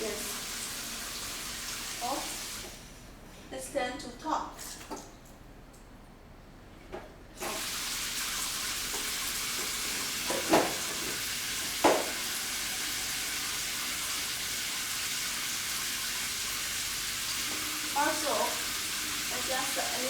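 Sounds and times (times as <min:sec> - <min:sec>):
shower water hissing: 0:00.0 - 0:03.1, 0:07.4 - 0:20.0.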